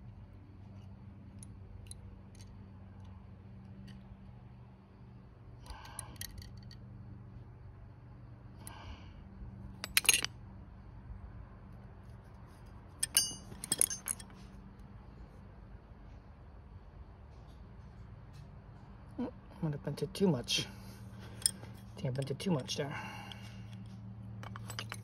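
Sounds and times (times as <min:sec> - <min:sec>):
faint steady hum: 0:00.0 - 0:25.0
metal clinking: 0:09.8 - 0:10.3, 0:13.0 - 0:14.4, 0:21.3 - 0:22.3, 0:24.4 - 0:25.0.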